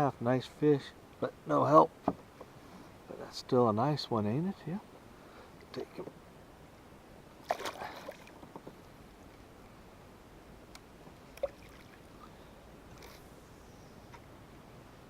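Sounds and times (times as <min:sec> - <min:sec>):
knocks and clatter on a kayak: 0:02.0 - 0:02.5, 0:08.3 - 0:08.8
water splashing against kayak: 0:07.4 - 0:08.8.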